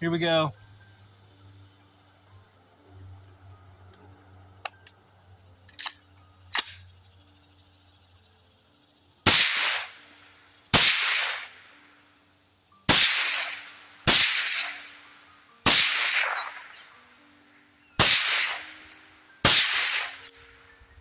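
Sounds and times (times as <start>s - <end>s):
suppressed rifle shots: 9.3s - 10.0s, 10.7s - 11.6s, 12.9s - 15.0s, 15.6s - 16.9s, 18.0s - 18.8s, 19.4s - 20.3s.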